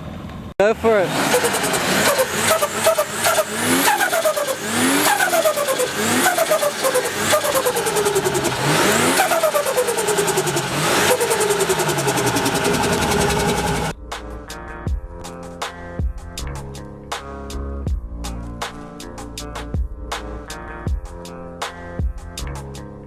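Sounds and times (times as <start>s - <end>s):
car engine revving: 0.6s - 13.9s
turbo flutter: 1.2s - 13.9s.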